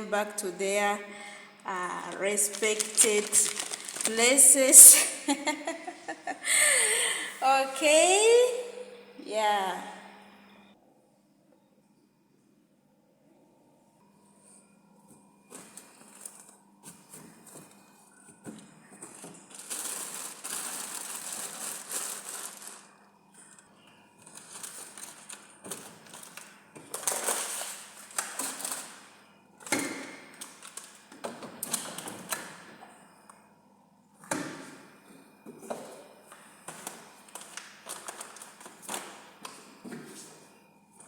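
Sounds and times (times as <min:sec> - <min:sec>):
packaging rustling: 0:02.0 - 0:04.8, 0:19.0 - 0:23.6, 0:24.2 - 0:29.0, 0:30.3 - 0:31.0, 0:36.9 - 0:39.2.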